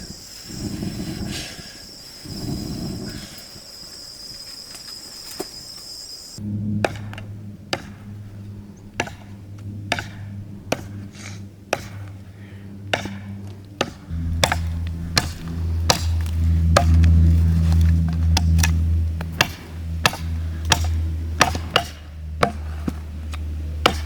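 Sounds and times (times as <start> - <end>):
low hum: 6.3 - 24.0
blade chopping: 6.8 - 8.2, 9.0 - 12.2, 12.9 - 24.0.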